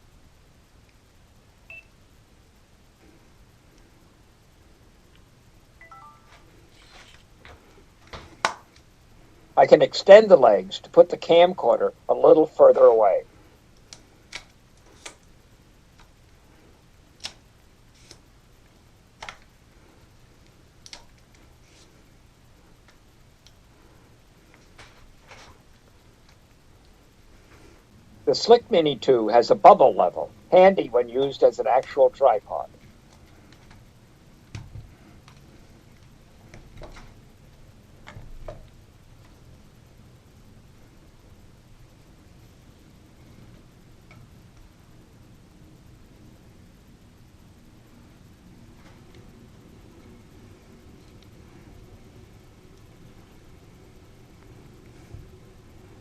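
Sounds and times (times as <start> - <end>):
faint steady hiss: 0.0 - 56.0.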